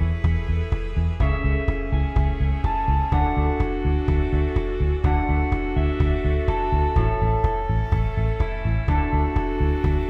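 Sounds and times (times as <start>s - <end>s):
background music with bass beat: 0.0s - 10.0s.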